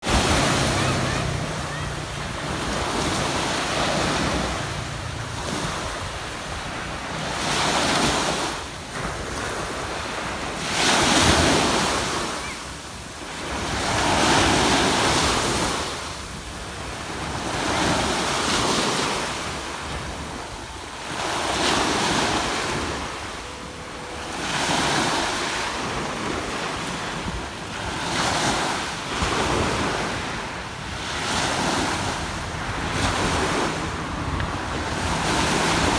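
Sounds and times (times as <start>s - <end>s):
waves breaking on beach: 0.0s - 35.9s
wind buffeting microphone: 0.0s - 35.9s.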